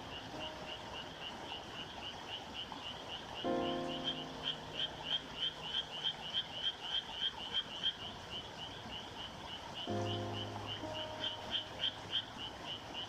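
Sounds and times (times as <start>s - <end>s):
frogs calling: 0.0s - 13.0s
piano chord ringing: 3.5s - 6.4s, 9.9s - 13.0s.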